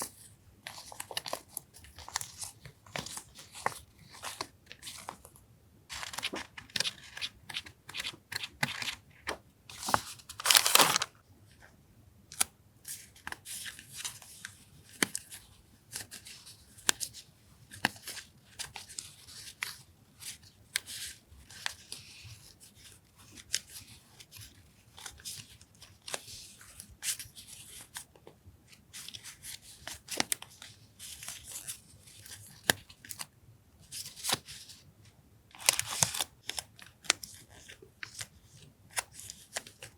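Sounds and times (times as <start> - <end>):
packaging crinkling and rustling: 9.7 - 11.2
packaging tearing: 9.8 - 11.1.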